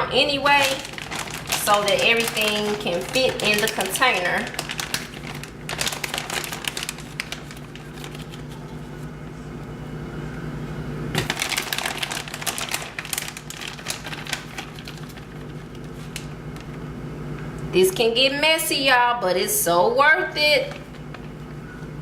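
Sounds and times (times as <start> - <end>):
rustling of food prep: 0.0 - 9.6, 11.1 - 17.5, 20.6 - 21.8
steady low hum: 0.0 - 22.0.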